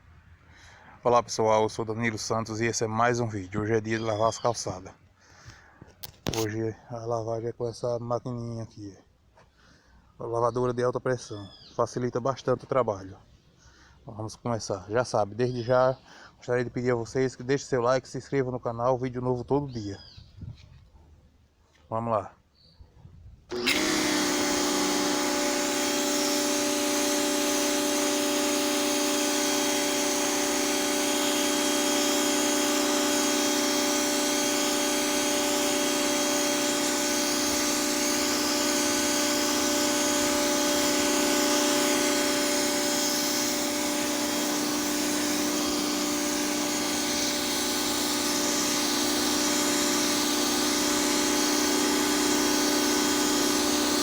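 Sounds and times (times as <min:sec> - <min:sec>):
pressure washer motor humming: 0:23.5 - 0:54.0.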